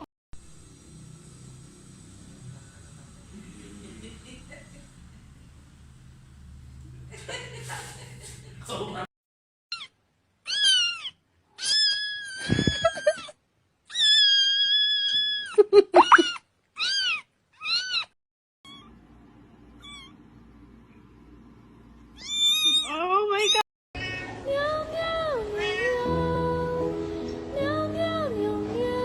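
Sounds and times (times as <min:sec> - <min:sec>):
cat meowing: 0:10.5 - 0:13.3, 0:13.9 - 0:18.1, 0:19.8 - 0:20.2, 0:22.2 - 0:24.4, 0:25.6 - 0:26.0.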